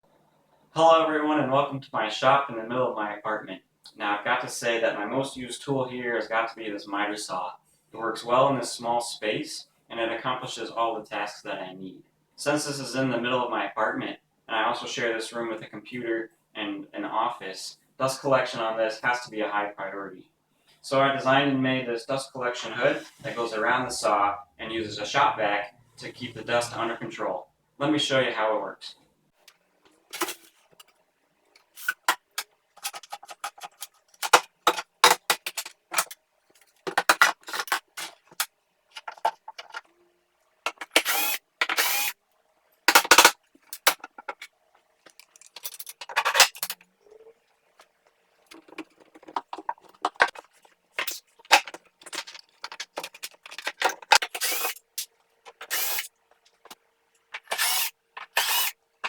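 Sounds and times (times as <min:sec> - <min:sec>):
power tool bursts: 0:40.7 - 0:42.2, 0:42.9 - 0:44.0, 0:54.2 - 0:54.8, 0:55.6 - 0:56.1, 0:57.4 - 0:58.8.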